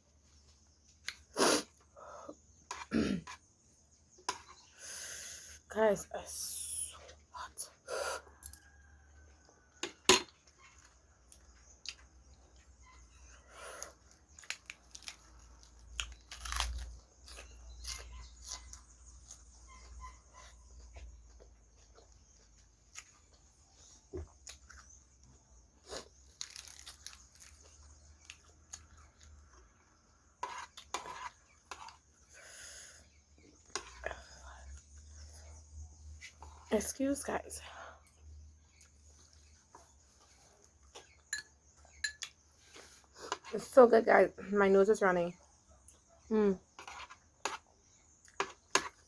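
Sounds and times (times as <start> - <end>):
person chewing food: 8.2 - 36.7, 46.7 - 49.0.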